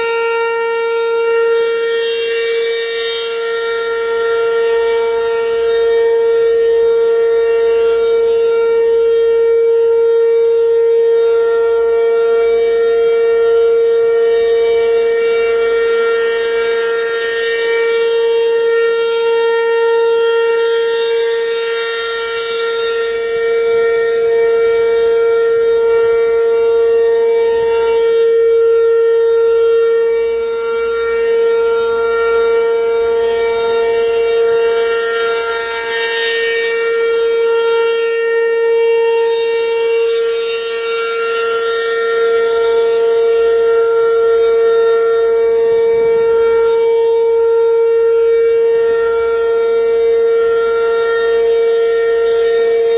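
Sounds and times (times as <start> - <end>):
warning siren steady tone: 0.0 - 52.9.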